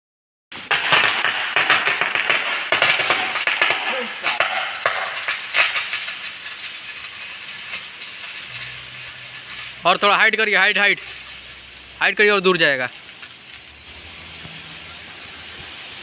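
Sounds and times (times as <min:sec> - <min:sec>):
hose nozzle water spraying: 0:04.7 - 0:16.0.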